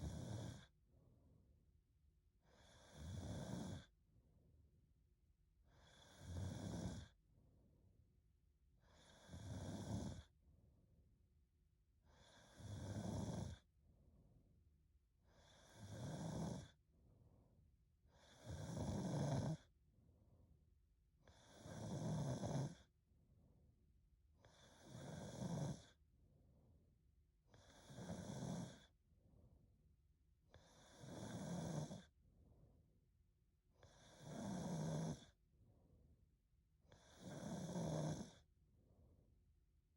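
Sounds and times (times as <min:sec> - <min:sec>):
woman snoring: 0:00.0 - 0:00.7, 0:02.5 - 0:03.9, 0:05.8 - 0:07.2, 0:08.8 - 0:10.3, 0:12.1 - 0:13.6, 0:15.3 - 0:16.8, 0:18.1 - 0:19.7, 0:21.3 - 0:22.9, 0:24.4 - 0:26.0, 0:27.6 - 0:28.9, 0:30.5 - 0:32.1, 0:33.8 - 0:35.4, 0:36.9 - 0:38.4.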